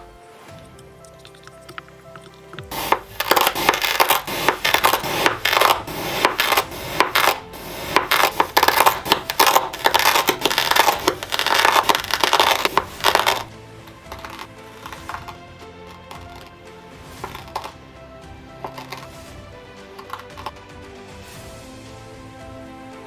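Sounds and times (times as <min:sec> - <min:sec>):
kinetic sand crunching and crackling: 0:00.3 - 0:17.8.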